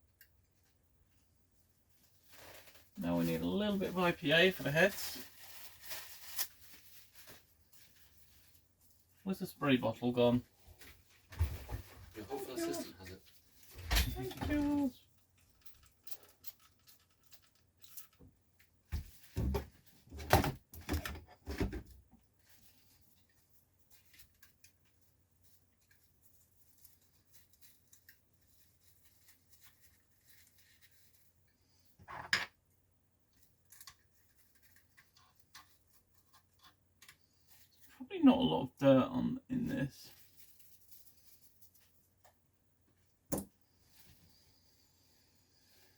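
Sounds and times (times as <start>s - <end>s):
small clicks of handled parts: 15.4s - 18.7s.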